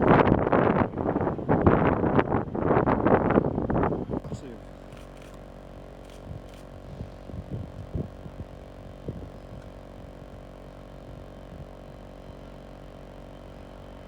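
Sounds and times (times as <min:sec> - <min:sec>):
train engine hum: 0:00.0 - 0:14.0
dull low thumps: 0:06.0 - 0:12.0.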